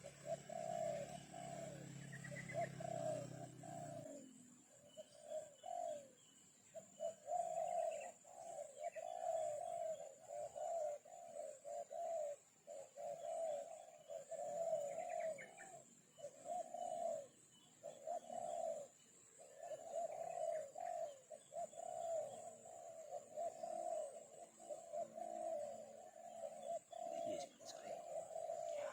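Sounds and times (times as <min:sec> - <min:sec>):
steady high-pitched whine: 0:00.0 - 0:05.9
bird warbling calls: 0:00.0 - 0:28.9
faint higher bird chirps: 0:00.0 - 0:28.9.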